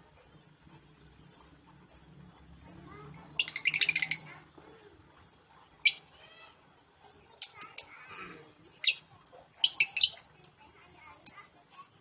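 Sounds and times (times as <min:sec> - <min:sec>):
lovebird shrill chirps: 0:03.4 - 0:04.2, 0:07.4 - 0:08.0, 0:09.6 - 0:10.2.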